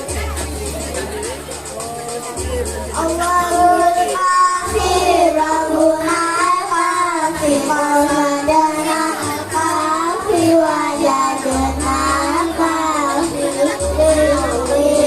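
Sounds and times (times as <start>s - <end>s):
musical accompaniment: 0.0s - 15.0s
child singing: 2.9s - 15.0s.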